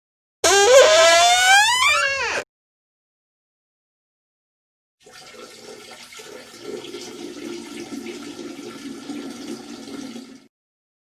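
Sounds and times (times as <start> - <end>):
rushing water: 5.0 - 10.5.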